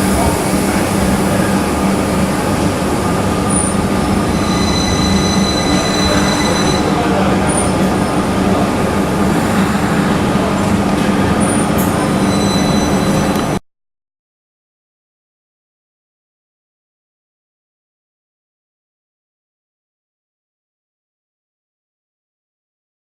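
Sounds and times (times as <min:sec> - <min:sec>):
train rolling noise: 0:00.0 - 0:13.6
high wheel squeals: 0:03.2 - 0:08.6, 0:11.4 - 0:13.6.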